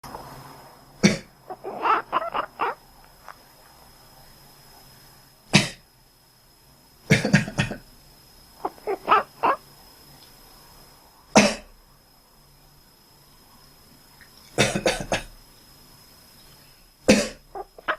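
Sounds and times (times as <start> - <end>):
person coughing: 1.0 - 1.3, 7.1 - 7.8, 11.4 - 11.7, 14.6 - 15.3, 17.1 - 17.4
cat making quack-like sounds: 1.0 - 2.8, 8.6 - 9.6, 17.1 - 17.9.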